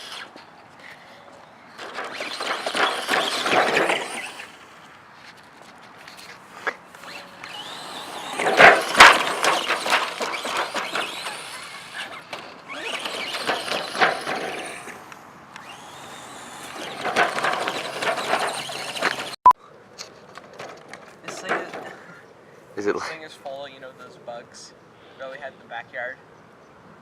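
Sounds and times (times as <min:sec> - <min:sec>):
rc truck motor and wheels rattling: 0:00.0 - 0:00.5, 0:01.7 - 0:04.8, 0:06.9 - 0:19.4, 0:20.3 - 0:22.1.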